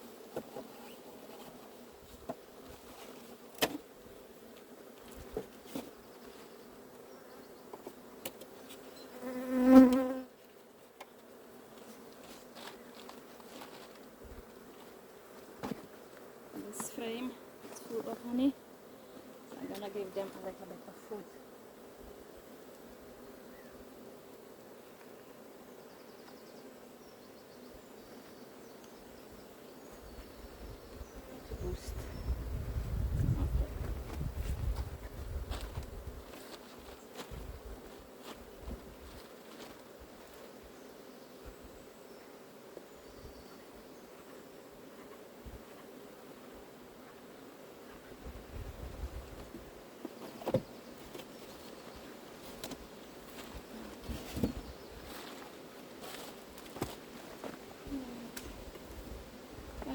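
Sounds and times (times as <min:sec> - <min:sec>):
bee buzzing close: 0:00.0 - 0:59.9
bees humming: 0:05.8 - 0:10.3.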